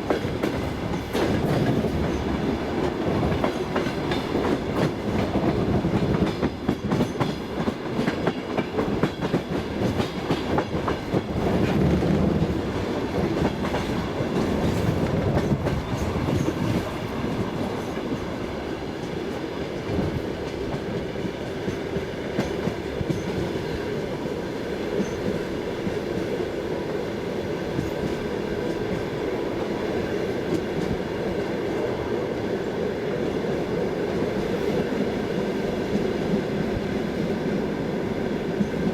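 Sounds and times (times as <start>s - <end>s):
train wheels clattering on rails: 0.0s - 26.6s, 27.4s - 32.0s.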